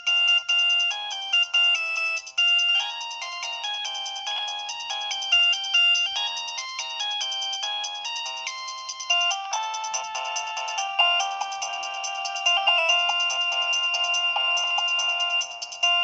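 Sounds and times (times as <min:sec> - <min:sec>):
cellphone ringtone melody: 0:00.0 - 0:16.0.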